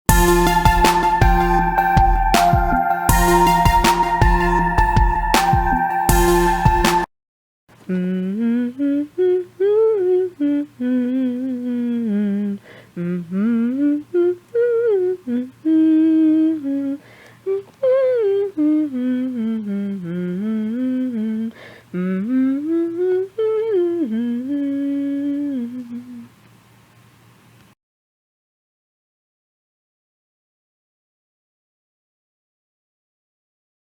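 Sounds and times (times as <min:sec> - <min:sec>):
woman humming a tune: 0:07.8 - 0:26.4.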